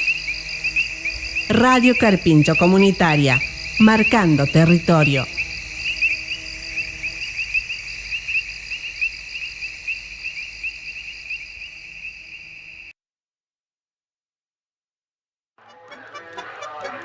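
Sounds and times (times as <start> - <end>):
crickets chirping: 0.0 - 12.9.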